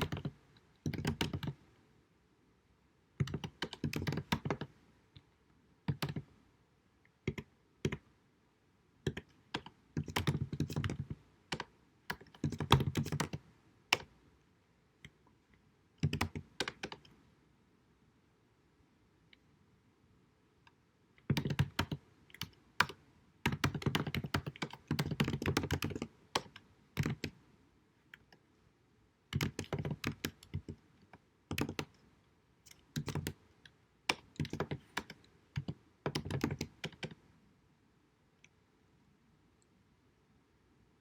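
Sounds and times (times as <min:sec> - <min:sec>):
typing on a computer keyboard: 0:00.0 - 0:01.6, 0:03.2 - 0:05.3, 0:05.9 - 0:06.3, 0:07.2 - 0:08.1, 0:09.0 - 0:14.1, 0:16.0 - 0:17.2, 0:21.2 - 0:27.4, 0:29.3 - 0:37.2.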